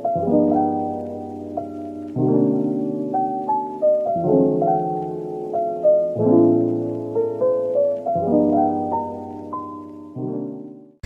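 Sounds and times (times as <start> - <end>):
gentle piano melody: 0.0 - 11.0.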